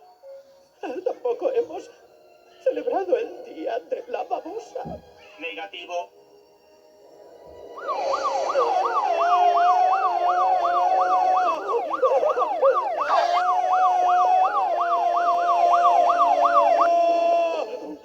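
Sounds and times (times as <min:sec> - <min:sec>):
electronic siren-like cartoon effect: 0:07.7 - 0:17.7.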